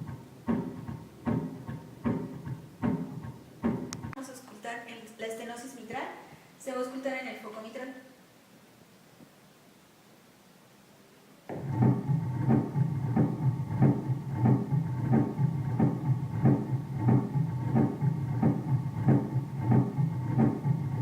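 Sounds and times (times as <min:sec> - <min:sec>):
heartbeats: 0:00.0 - 0:04.2, 0:11.5 - 0:21.0
steady low hum: 0:00.0 - 0:07.4, 0:08.0 - 0:21.0.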